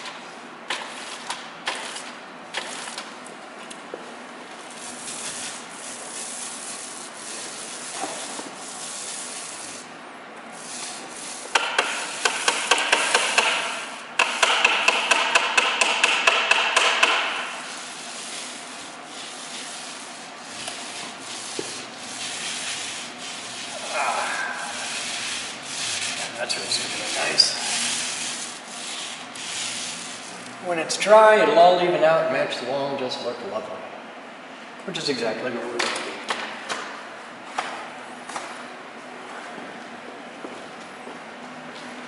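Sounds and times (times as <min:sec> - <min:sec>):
quick rubbing strokes: 0:04.6 - 0:09.9, 0:10.5 - 0:15.1, 0:16.4 - 0:30.5
quiet scratchy rubbing: 0:20.9 - 0:30.4.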